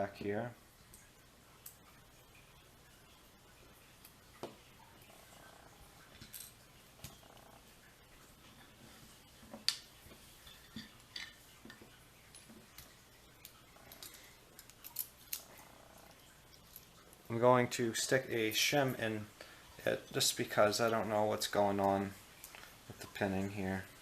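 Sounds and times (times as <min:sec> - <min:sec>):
small metal clicks and scrapes: 0:10.4 - 0:15.7.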